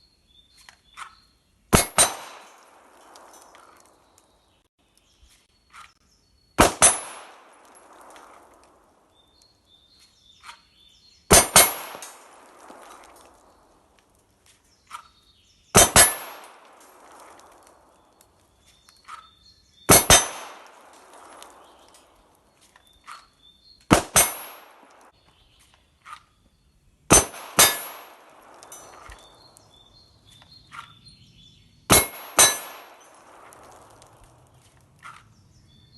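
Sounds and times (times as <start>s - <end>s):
pistol shots with ringing echo: 1.7s - 4.1s, 6.6s - 9.0s, 11.3s - 13.7s, 15.8s - 18.0s, 19.9s - 22.4s, 23.9s - 25.2s, 27.1s - 30.0s, 31.9s - 34.4s.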